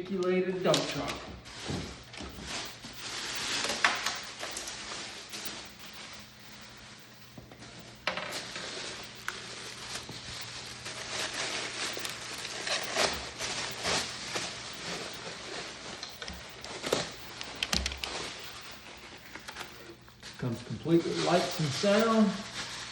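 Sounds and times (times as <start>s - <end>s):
packaging rustling and crinkling: 0.6s - 22.9s
sharp clicks and knocks: 17.1s - 18.2s.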